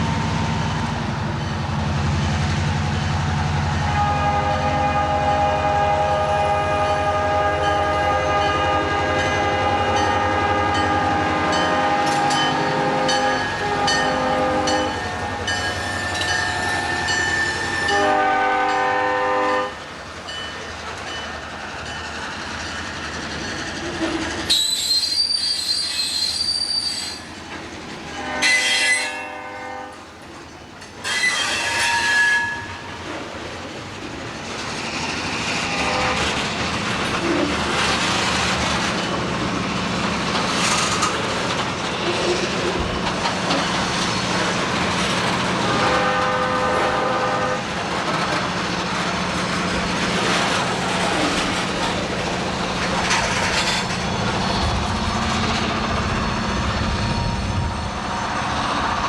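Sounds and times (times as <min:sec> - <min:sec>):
locomotive horn blast: 0:03.3 - 0:19.8, 0:28.1 - 0:30.0, 0:35.6 - 0:36.4, 0:45.6 - 0:47.8
high wheel squeal: 0:13.2 - 0:18.0, 0:23.4 - 0:27.4, 0:31.0 - 0:32.8
diesel locomotive engine running: 0:33.1 - 0:59.0.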